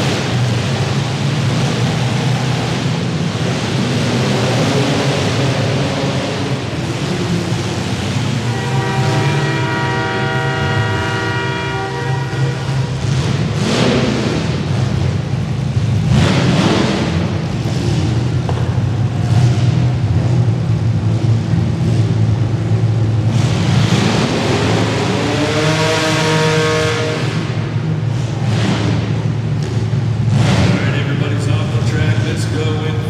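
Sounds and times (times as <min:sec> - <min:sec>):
car engines revving: 0:00.0 - 0:33.0
car horn: 0:08.3 - 0:13.2, 0:25.6 - 0:27.6.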